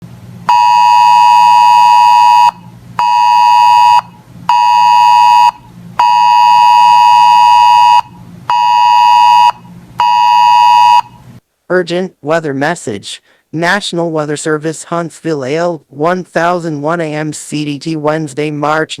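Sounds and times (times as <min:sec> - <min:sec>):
weather radio alarm beeping: 0:00.5 - 0:11.2.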